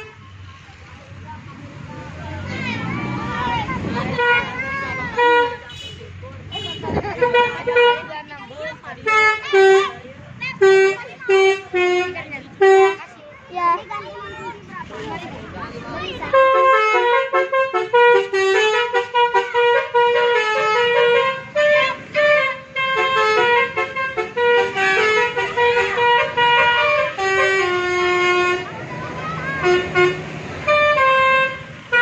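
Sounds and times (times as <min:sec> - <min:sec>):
multi-tone bus horn melody: 0:00.0 - 0:00.2, 0:03.9 - 0:13.1, 0:16.0 - 0:32.0.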